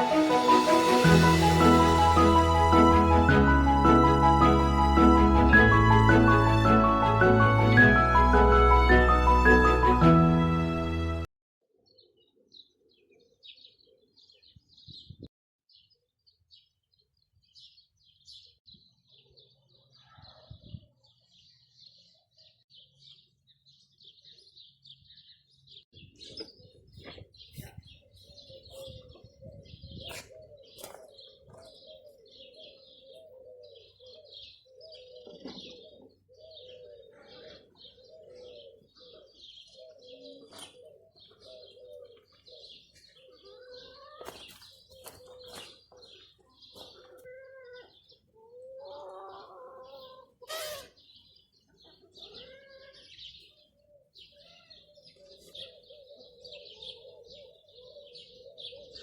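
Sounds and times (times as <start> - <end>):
small birds chirping: 11.9 - 59.0
doves cooing: 28.5 - 45.8, 54.9 - 59.0.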